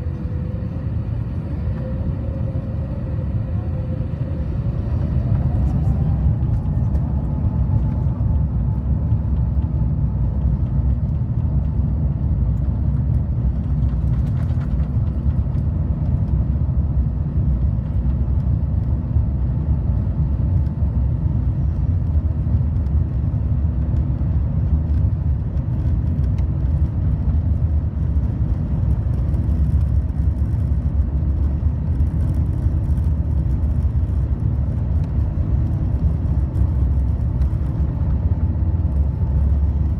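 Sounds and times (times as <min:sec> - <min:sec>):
airplane cabin engine rumble: 0:00.0 - 0:39.9
engine whine: 0:00.0 - 0:39.9.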